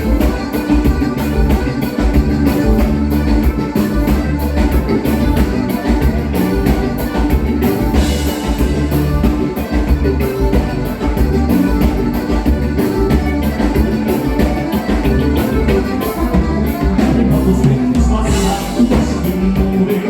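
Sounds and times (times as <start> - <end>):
dance band playing: 0.0 - 20.0
drums and bass beat: 0.0 - 20.0.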